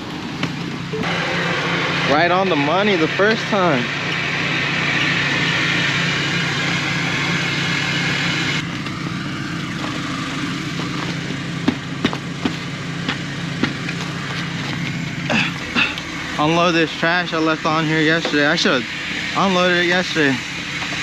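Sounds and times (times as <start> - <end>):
truck engine idling: 0.0 - 21.0.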